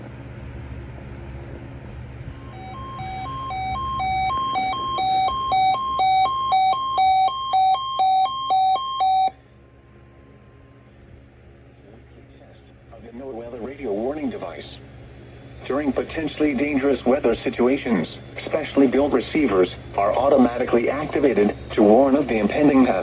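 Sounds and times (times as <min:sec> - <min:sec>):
two-tone alert alarm pulsing: 0:02.3 - 0:09.4.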